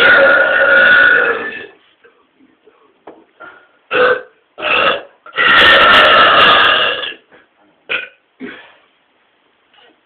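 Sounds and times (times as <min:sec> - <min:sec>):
man burping loudly: 0:00.0 - 0:01.7, 0:03.9 - 0:07.3, 0:07.9 - 0:08.6.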